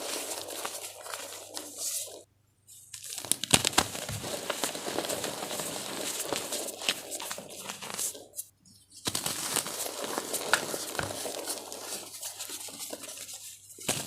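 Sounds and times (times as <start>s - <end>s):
powder blocks crunching: 0.0s - 2.2s, 3.0s - 8.2s, 9.1s - 12.4s
sharp cracks: 3.0s - 5.2s.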